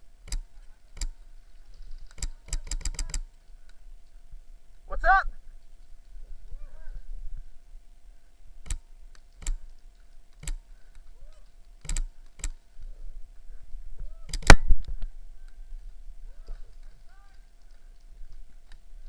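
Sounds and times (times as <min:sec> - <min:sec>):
airsoft gunfire snaps: 0:14.3 - 0:15.0.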